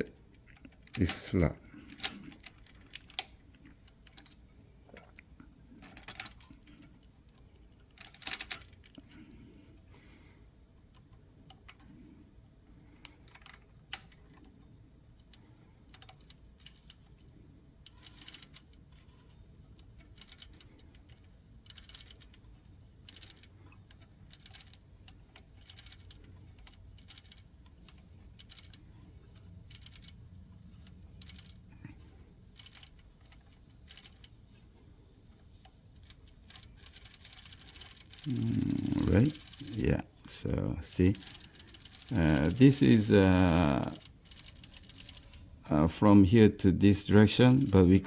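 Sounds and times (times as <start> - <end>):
typewriter metal parts clicking: 1.9 - 4.5, 5.8 - 9.2, 12.9 - 14.6, 17.9 - 19.1, 19.7 - 34.4, 35.6 - 39.8, 40.5 - 45.5, 47.0 - 48.0.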